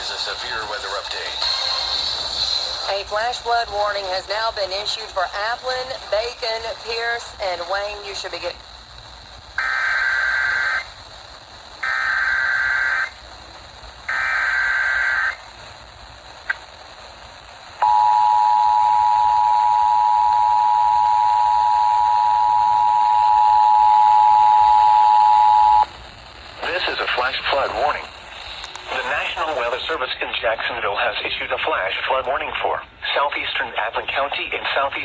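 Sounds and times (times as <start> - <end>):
two-tone attention signal: 17.8 - 25.8
warbling data tones: 17.8 - 25.9.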